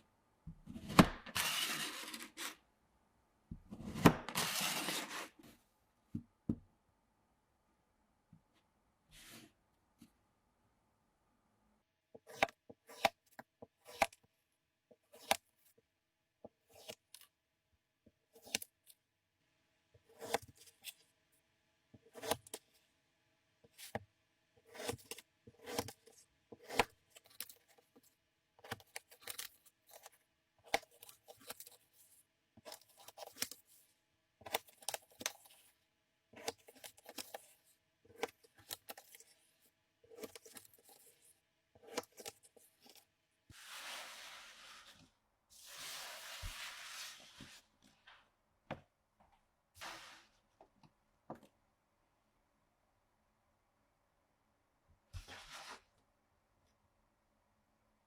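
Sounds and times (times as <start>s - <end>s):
knife scraping through sand: 1.4s - 2.6s, 4.4s - 5.4s.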